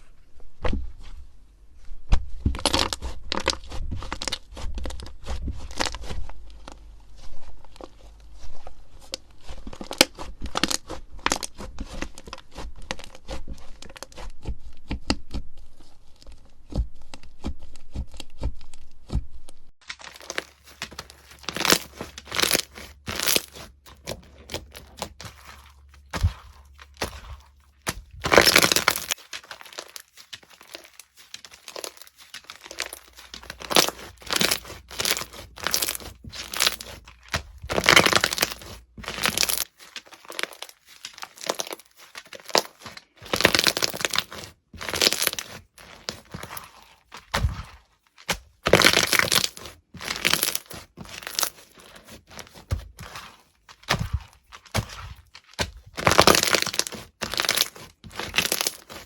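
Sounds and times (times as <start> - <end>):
slime squeezed crackling: 19.8 - 59.0.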